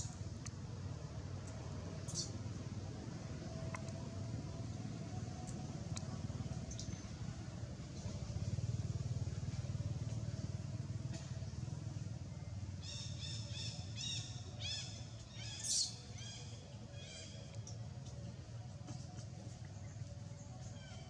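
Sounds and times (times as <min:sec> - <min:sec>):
small animal chirping: 0:02.1 - 0:02.3.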